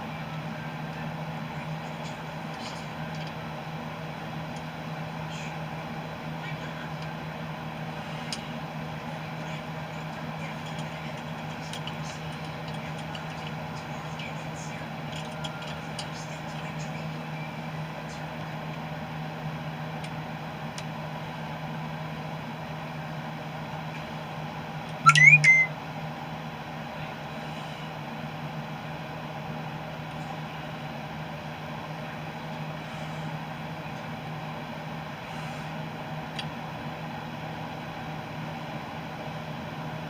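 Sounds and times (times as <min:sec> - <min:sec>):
low mechanical hum: 0:00.0 - 0:40.0
rising squeak: 0:25.1 - 0:25.7.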